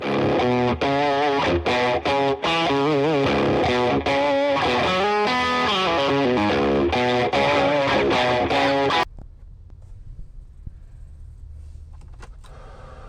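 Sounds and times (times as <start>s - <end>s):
distorted electric guitar melody: 0.0s - 9.1s.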